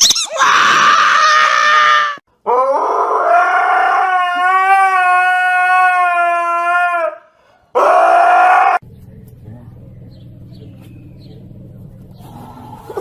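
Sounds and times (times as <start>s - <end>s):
dog howling: 0.3s - 7.2s, 7.8s - 8.8s.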